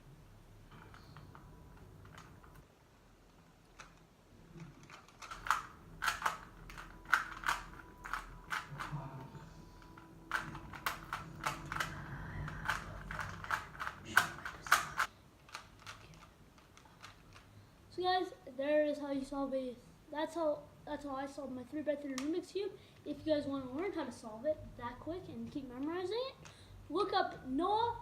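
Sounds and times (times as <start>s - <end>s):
puzzle cube plastic clicks: 3.7s - 9.0s, 9.8s - 17.5s.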